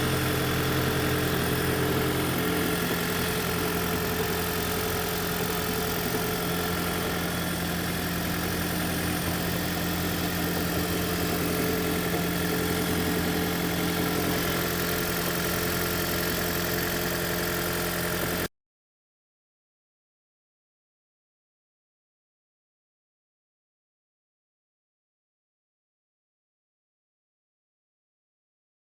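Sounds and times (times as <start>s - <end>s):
car engine idling: 0.0s - 18.5s.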